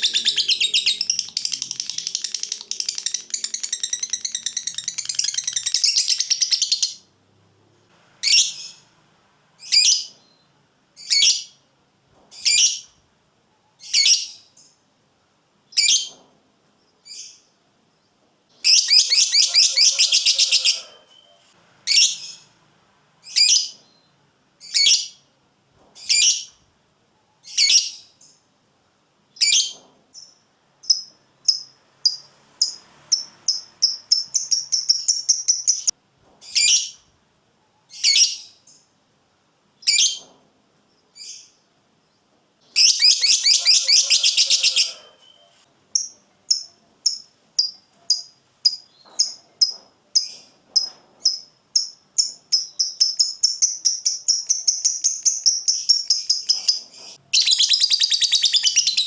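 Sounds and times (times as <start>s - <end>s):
bird chattering trill: 0.0s - 7.0s, 18.7s - 22.2s, 42.8s - 45.0s, 51.8s - 59.0s
lovebird shrill calls: 0.0s - 7.0s, 18.6s - 22.4s, 42.8s - 47.8s, 52.2s - 59.0s.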